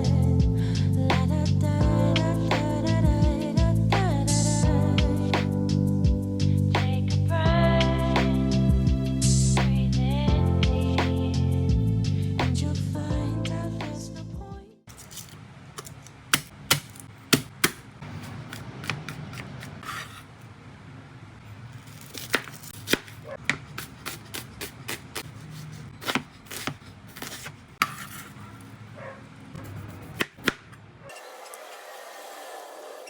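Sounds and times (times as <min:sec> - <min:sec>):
knife chopping on cutting board: 0:16.3 - 0:20.3, 0:22.1 - 0:28.1.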